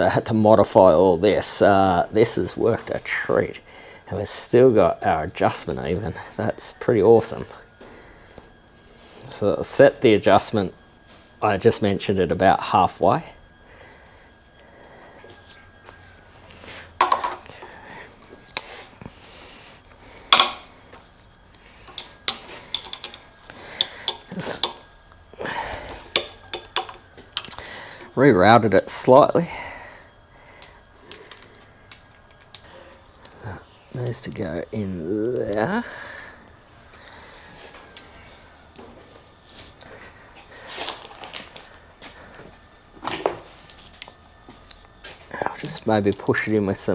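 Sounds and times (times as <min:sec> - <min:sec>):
hand handling noises: 0:15.4 - 0:25.0, 0:30.0 - 0:46.9
metal tools clinking: 0:17.0 - 0:18.9, 0:20.3 - 0:24.9, 0:25.8 - 0:27.7, 0:29.6 - 0:38.4, 0:43.5 - 0:46.9.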